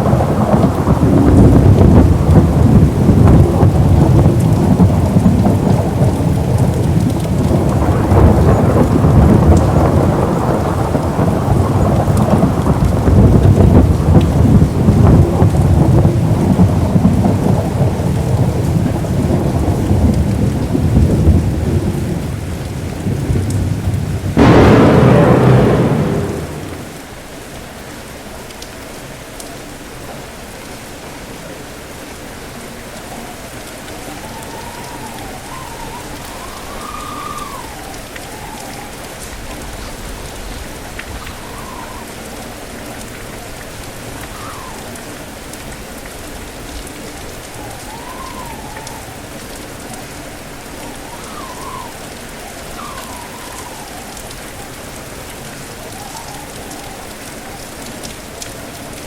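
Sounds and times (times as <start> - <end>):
steady rain falling: 0.0 - 59.0
wind whistling: 24.4 - 27.2.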